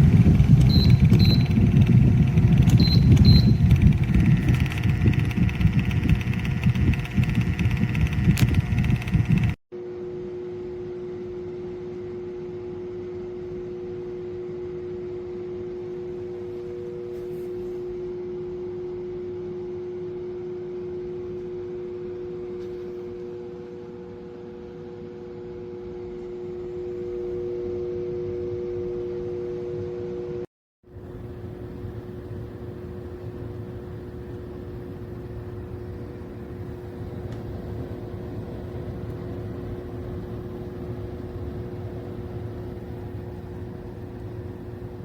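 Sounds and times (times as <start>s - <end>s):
two-note motor hum: 0.0s - 9.6s
window fan airflow: 0.0s - 9.6s, 30.8s - 45.0s.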